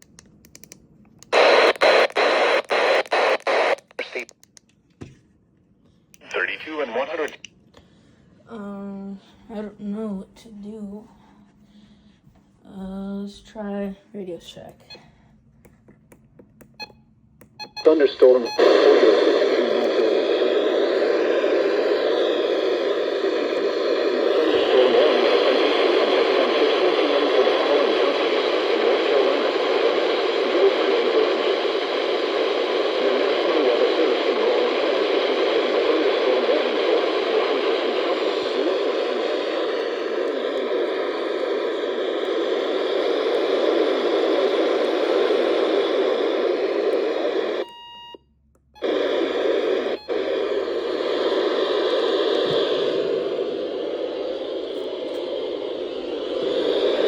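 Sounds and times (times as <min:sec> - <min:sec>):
radio static hiss: 0:01.2 - 0:04.5, 0:06.2 - 0:07.5, 0:17.6 - 0:47.7, 0:48.8 - 0:57.0.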